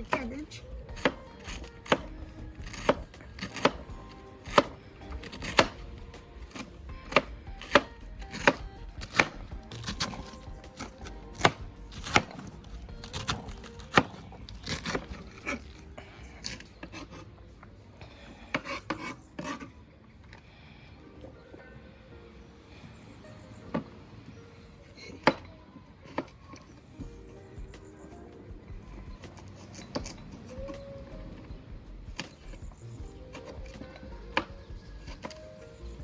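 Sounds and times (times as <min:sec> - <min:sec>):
knife chopping cabbage: 0:02.7 - 0:05.8.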